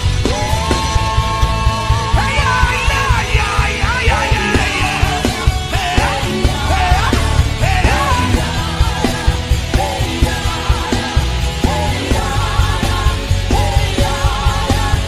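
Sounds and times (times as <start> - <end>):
drums beat: 0.0 - 15.0
worship band music: 0.0 - 15.0
lead melody with sliding notes: 0.8 - 11.6.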